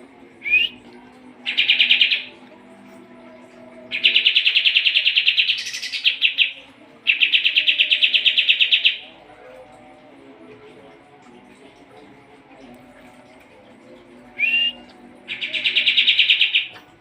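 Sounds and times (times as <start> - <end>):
bird singing rapid trills: 1.5 - 2.3, 3.9 - 9.1, 14.4 - 16.8.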